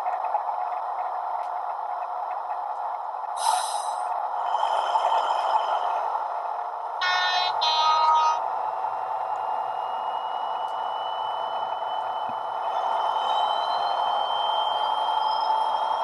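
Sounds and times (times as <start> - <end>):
thin rising whistle: 8.9 - 16.0.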